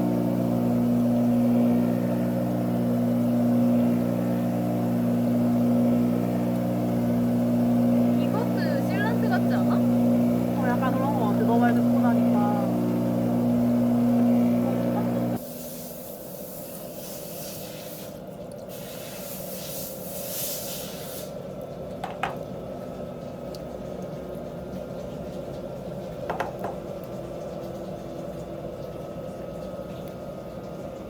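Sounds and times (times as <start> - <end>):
loud steady hum: 0.0 - 15.4
steady low hum: 0.0 - 15.4
hiss of air jet: 15.4 - 21.4.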